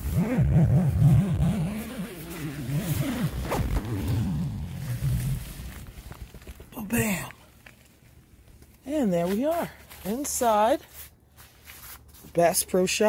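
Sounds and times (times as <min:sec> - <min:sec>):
zipper being pulled: 0:00.0 - 0:06.6.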